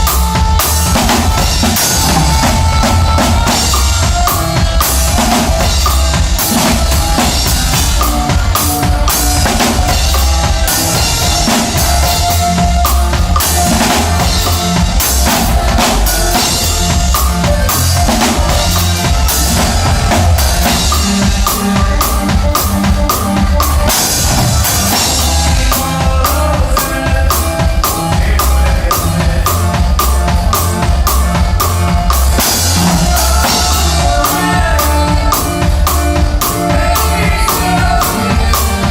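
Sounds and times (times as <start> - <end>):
drum kit beat: 0.0 - 38.9
live band playing: 0.0 - 38.9.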